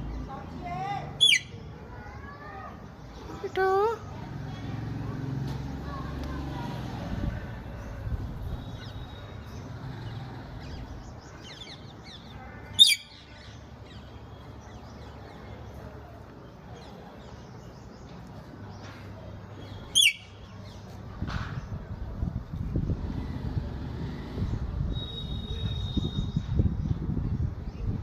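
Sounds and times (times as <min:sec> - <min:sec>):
parrot loud high calls: 0:01.2 - 0:01.6.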